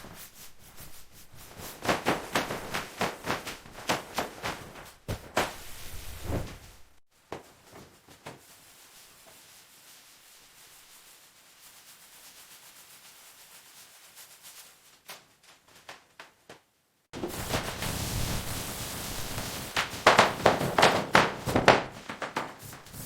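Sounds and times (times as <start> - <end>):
hand sanding a surface: 8.4 - 15.0, 17.2 - 23.0.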